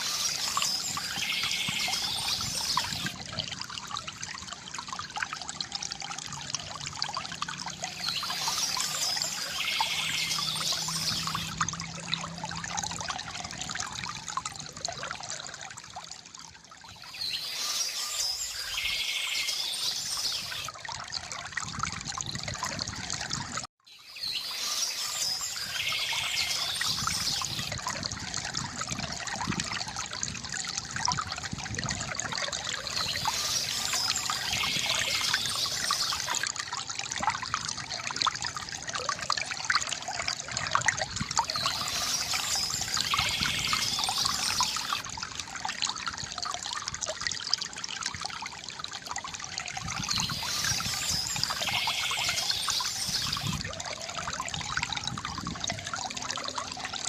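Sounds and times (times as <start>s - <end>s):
river water gurgling: 0.0s - 57.0s
songbird trilling: 8.0s - 11.6s, 50.1s - 53.6s.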